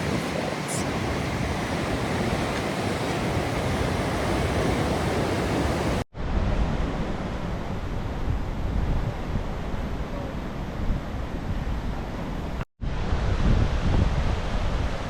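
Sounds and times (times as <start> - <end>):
waterfall roaring: 0.0 - 6.0.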